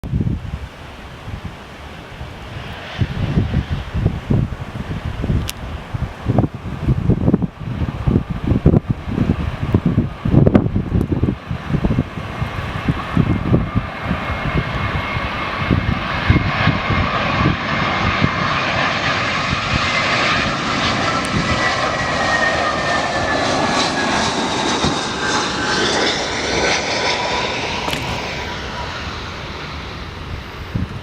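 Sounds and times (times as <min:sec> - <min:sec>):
wind buffeting microphone: 0:00.0 - 0:31.0
airliner engines passing by: 0:00.1 - 0:31.0.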